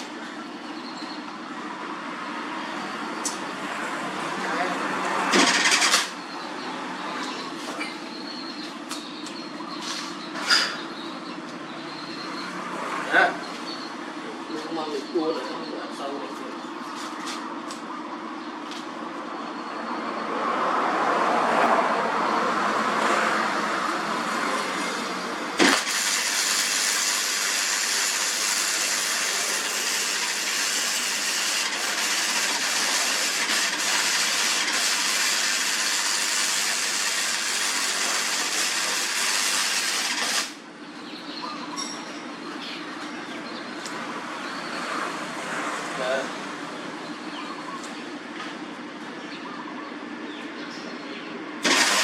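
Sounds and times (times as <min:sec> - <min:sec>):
welding arc striking crack: 0:25.6 - 0:30.6
welding arc crackling hiss: 0:25.6 - 0:40.6.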